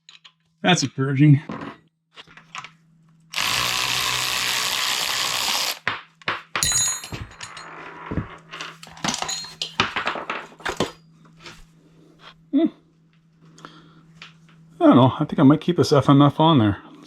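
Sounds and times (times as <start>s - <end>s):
power tool spinning bolt: 3.3s - 5.8s.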